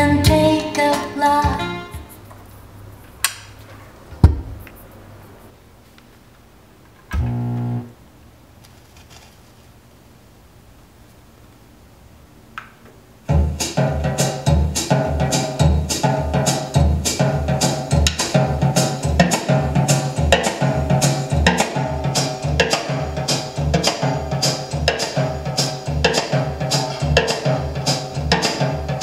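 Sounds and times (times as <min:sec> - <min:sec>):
drum-led music with bass: 0:00.0 - 0:02.3, 0:13.2 - 0:29.0.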